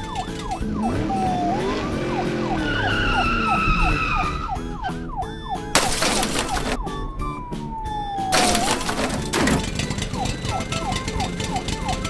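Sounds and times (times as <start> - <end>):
police siren yelping: 0.0 - 5.7, 6.8 - 12.0
background music: 0.0 - 12.0
slowly falling siren tone: 0.5 - 5.6.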